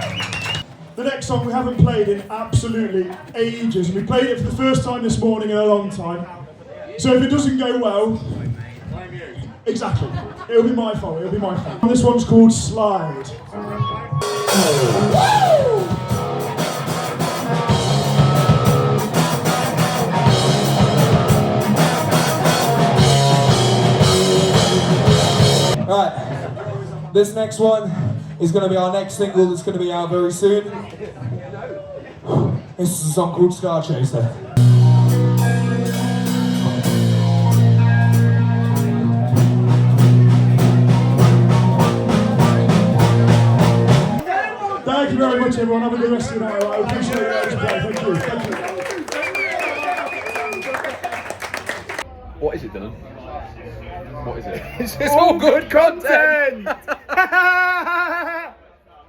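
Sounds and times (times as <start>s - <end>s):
drum kit beat: 14.2s - 25.8s, 34.6s - 44.3s
electric guitar and bass chords: 14.2s - 25.8s, 34.6s - 44.2s
hard rock band playing live: 14.2s - 25.8s, 34.6s - 44.2s.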